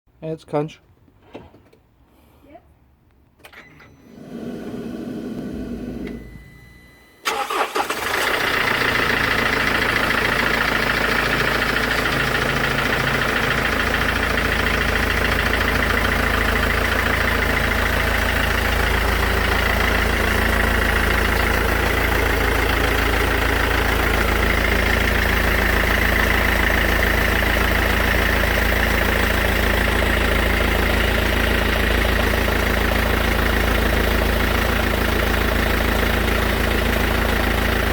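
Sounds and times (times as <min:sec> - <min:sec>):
diesel engine starting and idling: 0:03.3 - 0:37.9
brief hum: 0:05.4 - 0:07.3.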